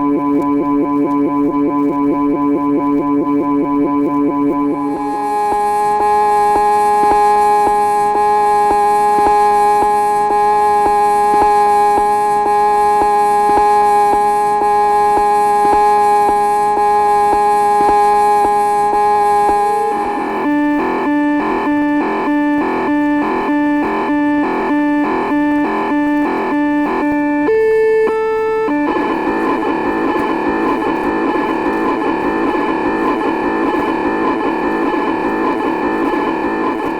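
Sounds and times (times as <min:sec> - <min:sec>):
alternating low and high beeps: 0:00.0 - 0:12.1
held electronic tones: 0:00.0 - 0:36.7
regular electronic ticking: 0:00.0 - 0:36.9.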